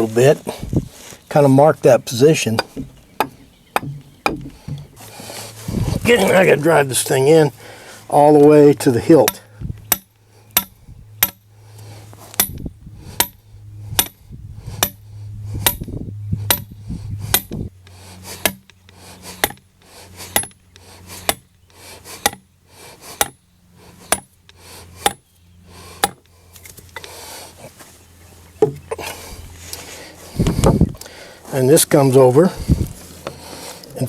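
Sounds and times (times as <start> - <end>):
hammer striking metal stake: 9.2 - 11.4, 12.3 - 13.4, 14.0 - 14.2, 14.8 - 15.0, 15.6 - 15.9, 16.5 - 16.7, 17.3 - 17.6, 18.4 - 18.8, 19.4 - 19.6, 20.3 - 20.6, 21.2 - 21.5, 22.2 - 22.4, 23.2 - 23.4, 24.1 - 24.4, 25.0 - 25.2, 26.0 - 26.3.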